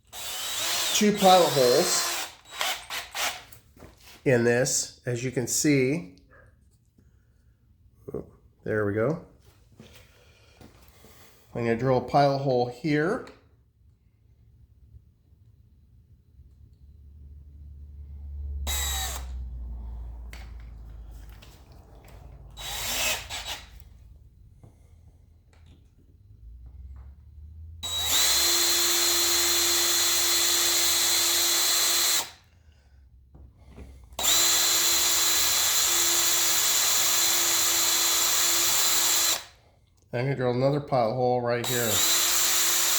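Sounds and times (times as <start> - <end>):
power drill whining: 0.1 - 3.6, 18.6 - 19.4, 22.1 - 23.9, 27.8 - 32.5, 33.8 - 39.6, 41.6 - 42.9.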